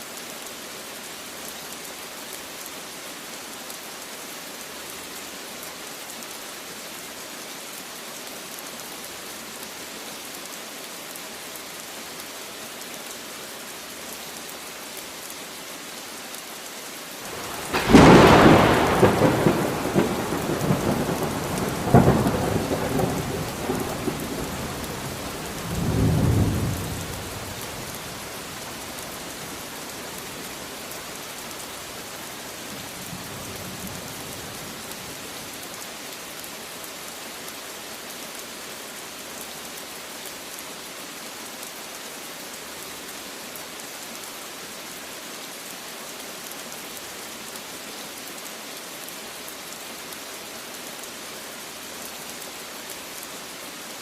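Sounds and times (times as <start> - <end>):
steady rain: 0.0 - 54.0
thunder crack and rumble: 17.3 - 28.0.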